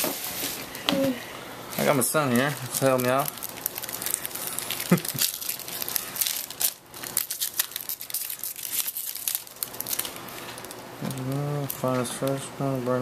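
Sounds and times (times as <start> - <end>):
card pack wrappers crinkling: 1.7 - 12.4.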